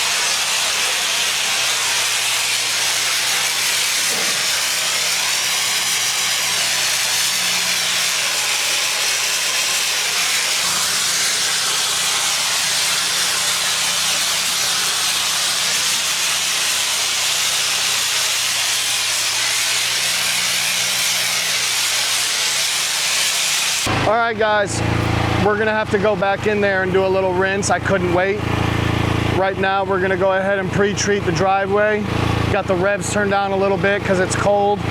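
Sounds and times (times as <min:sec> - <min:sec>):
pressure washer water spray hiss: 0:00.0 - 0:23.9.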